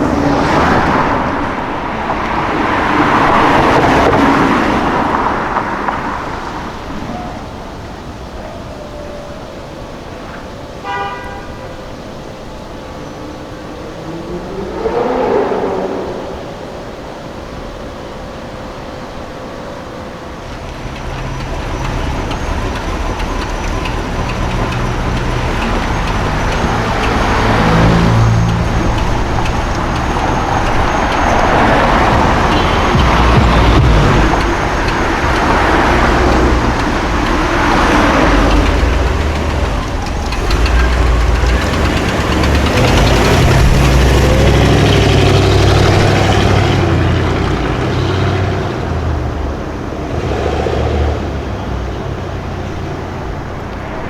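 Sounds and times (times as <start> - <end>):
car engines revving: 0.0 - 9.2, 12.0 - 18.1, 20.2 - 54.0
deep exhaust rumble: 20.4 - 50.0.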